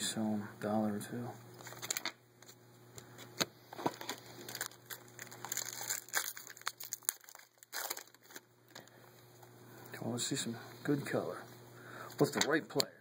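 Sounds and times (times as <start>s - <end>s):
card wrappers crinkling and tearing: 1.6s - 2.6s, 3.4s - 9.0s.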